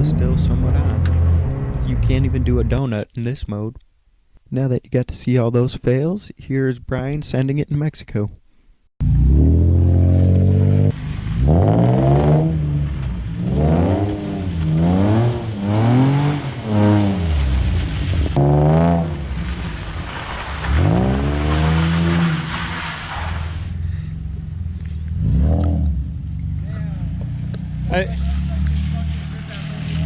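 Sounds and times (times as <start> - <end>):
car engine revving: 0.0 - 2.8, 9.0 - 30.0
tyres spinning on wet road: 11.0 - 23.7, 28.0 - 30.0.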